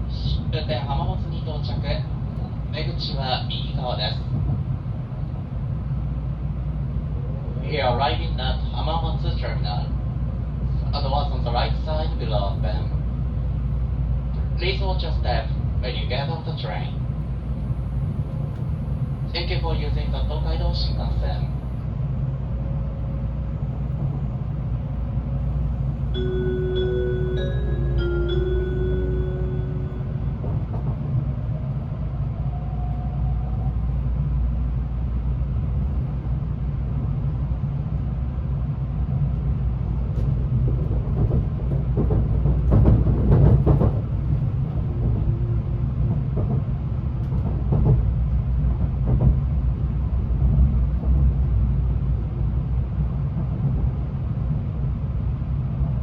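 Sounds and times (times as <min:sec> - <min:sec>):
train interior low rumble: 0:00.0 - 0:56.0
melody chime: 0:26.2 - 0:30.2.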